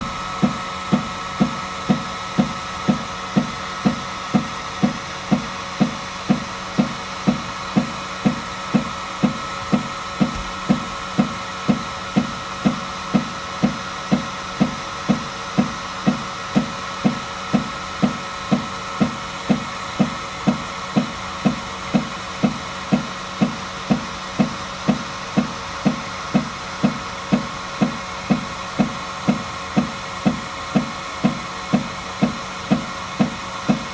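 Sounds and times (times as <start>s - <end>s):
printer knocking: 0.0s - 33.9s
steady running hum: 0.0s - 33.9s.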